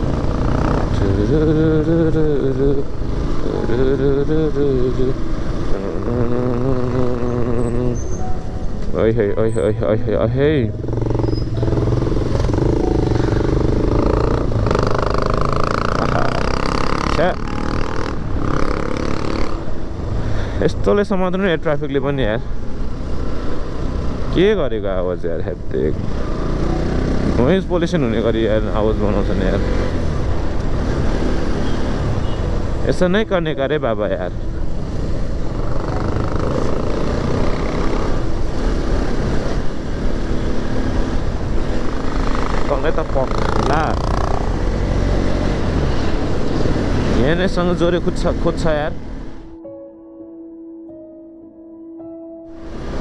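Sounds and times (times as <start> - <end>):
loud motorcycle engine running: 0.0 - 8.1, 10.7 - 20.5, 25.9 - 32.9, 34.6 - 49.3.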